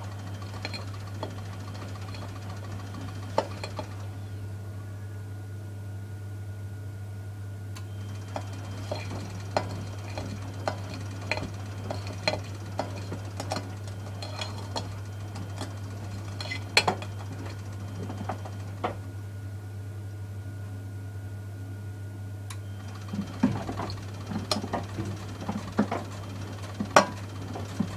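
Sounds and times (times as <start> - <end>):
washing machine drum tumbling: 0.0 - 4.1, 8.0 - 19.0, 22.8 - 27.9
washing machine low hum: 0.0 - 27.9.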